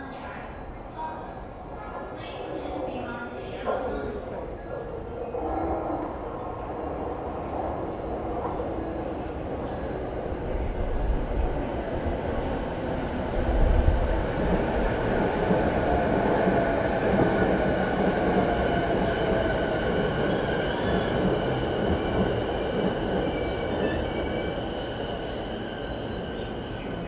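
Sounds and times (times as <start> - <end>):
train wheels rumbling on rail: 6.9 - 27.0.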